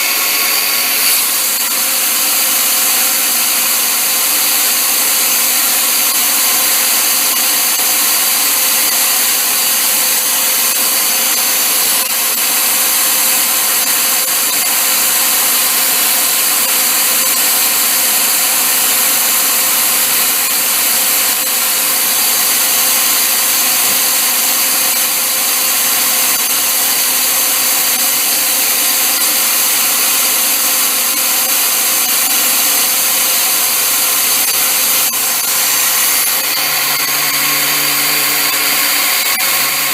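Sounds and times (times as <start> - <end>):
power tool whining: 0.0 - 39.9.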